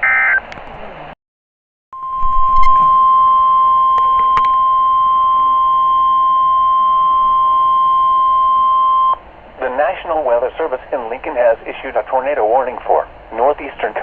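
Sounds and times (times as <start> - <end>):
loud steady alarm beep: 2.0 - 9.2.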